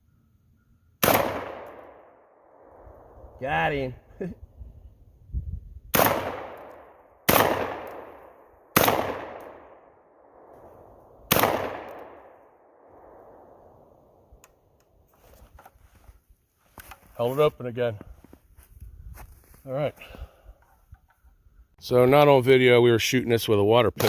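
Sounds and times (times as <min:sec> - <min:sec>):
shotgun shots: 0:01.0 - 0:02.1, 0:05.9 - 0:09.9, 0:11.3 - 0:13.4.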